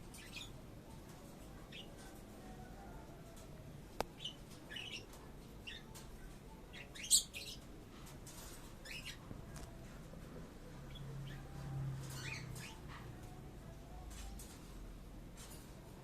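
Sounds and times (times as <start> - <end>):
parrots chirping: 6.7 - 7.6, 8.8 - 9.2, 10.9 - 13.0.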